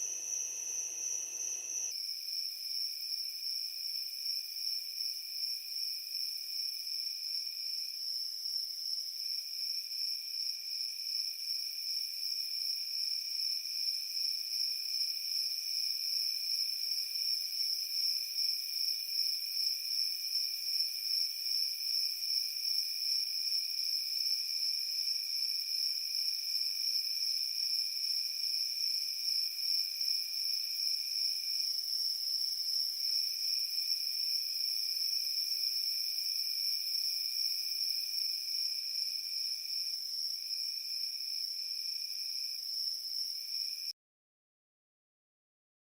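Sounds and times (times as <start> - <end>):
crickets trilling: 0.0 - 1.9.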